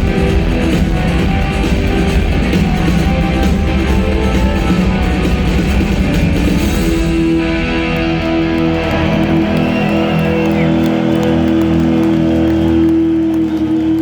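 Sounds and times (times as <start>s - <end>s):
drums: 0.0s - 14.0s
electric guitars: 0.0s - 14.0s.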